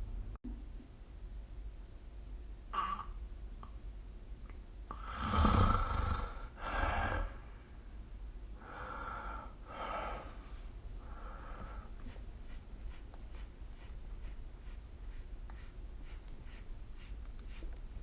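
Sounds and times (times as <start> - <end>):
person snoring: 4.9 - 7.4.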